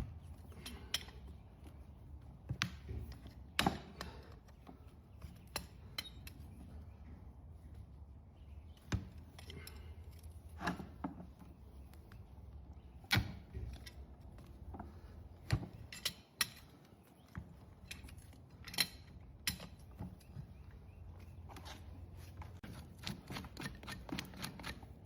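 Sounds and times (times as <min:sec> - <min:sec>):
metal tools scraping hoof: 0:00.2 - 0:01.4, 0:05.2 - 0:06.8, 0:21.3 - 0:25.0.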